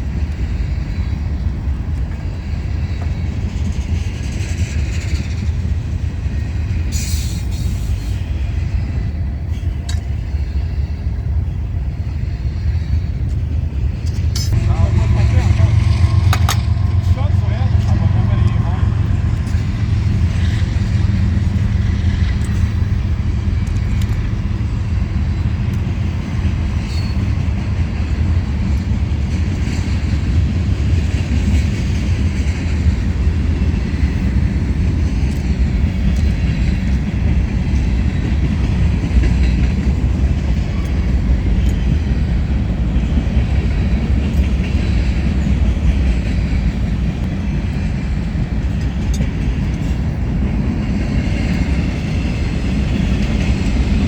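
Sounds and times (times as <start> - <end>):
large engine droning: 8.9 - 29.6.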